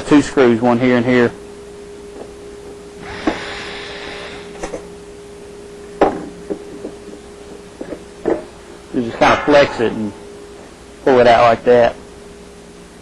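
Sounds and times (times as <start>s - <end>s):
faint steady hum: 0.0s - 13.0s
sharp knock: 9.2s - 10.2s.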